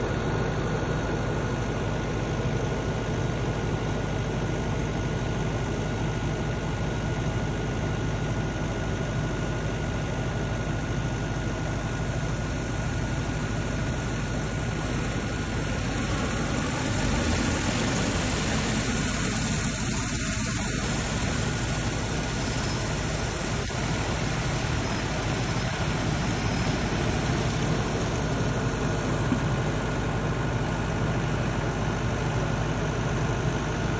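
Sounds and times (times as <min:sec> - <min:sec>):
motor whining and humming: 0:12.2 - 0:32.0.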